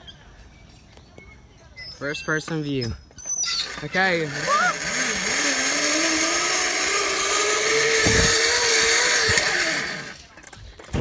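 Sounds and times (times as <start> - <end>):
zip line trolley whirring: 3.3 - 10.3.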